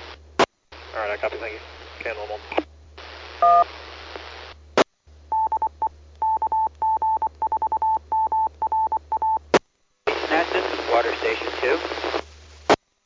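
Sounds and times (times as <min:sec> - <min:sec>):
static cracks: 0:00.0 - 0:04.9, 0:09.5 - 0:12.8
faint radio hiss: 0:00.0 - 0:07.4, 0:08.0 - 0:13.0
morse code beeps: 0:05.3 - 0:09.4.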